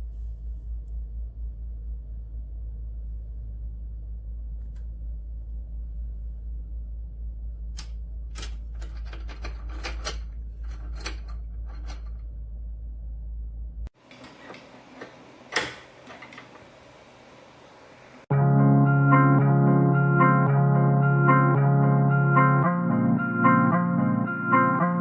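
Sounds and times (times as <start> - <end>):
steady low hum: 0.0 - 18.3.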